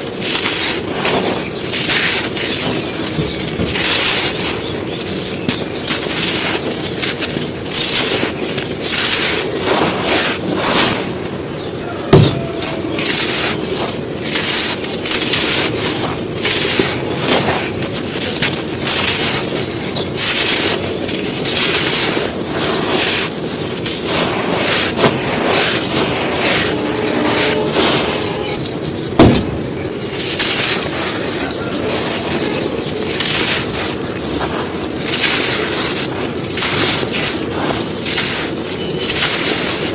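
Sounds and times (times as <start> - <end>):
gritty sand crunches: 0.0 - 39.9
sharp crack: 12.1 - 39.9
low thump: 29.2 - 29.7.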